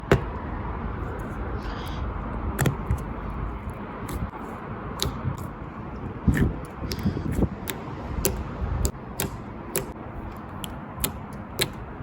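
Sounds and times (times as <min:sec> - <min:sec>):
steady background noise: 0:00.0 - 0:12.0.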